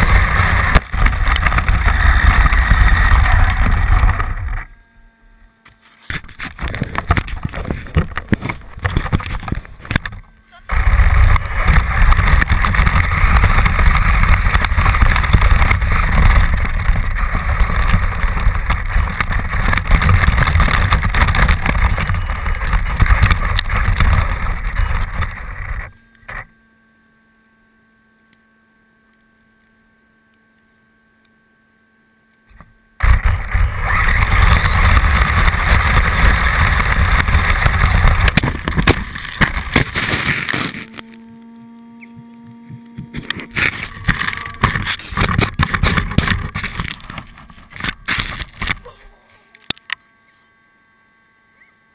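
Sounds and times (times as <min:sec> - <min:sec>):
vehicle running: 0:00.0 - 0:04.7, 0:06.5 - 0:25.9, 0:33.0 - 0:47.9
wind rumble on microphone: 0:00.0 - 0:04.7, 0:06.2 - 0:26.4, 0:33.0 - 0:41.4.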